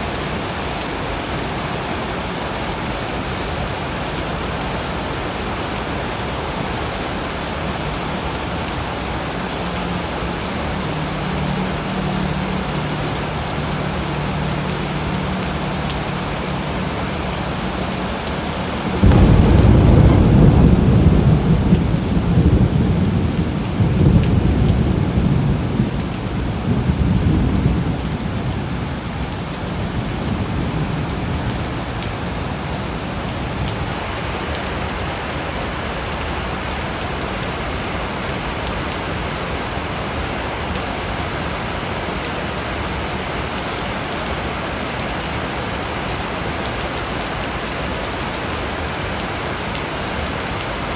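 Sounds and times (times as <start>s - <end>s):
heavy rain: 0.0s - 50.9s
thunder rumbling: 3.7s - 35.3s.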